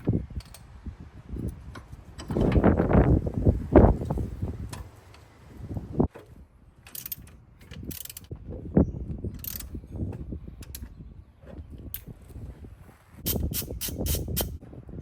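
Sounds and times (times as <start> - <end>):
ratchet wrench clicking: 6.9 - 8.3, 9.4 - 9.7, 13.3 - 14.6.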